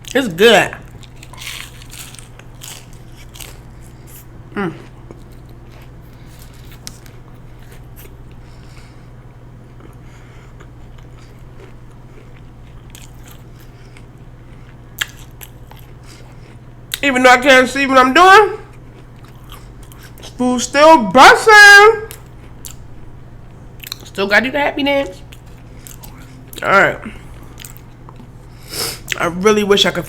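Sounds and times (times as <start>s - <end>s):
steady low hum: 0.0s - 30.0s
crunchy chewing: 0.8s - 17.0s, 18.7s - 20.4s, 22.1s - 24.2s, 25.2s - 29.2s
person humming: 4.5s - 4.8s.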